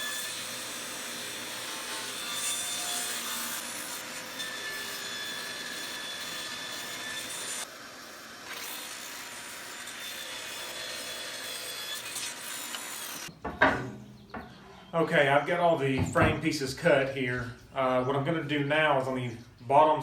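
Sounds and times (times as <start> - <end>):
power saw cutting wood: 0.0 - 13.3.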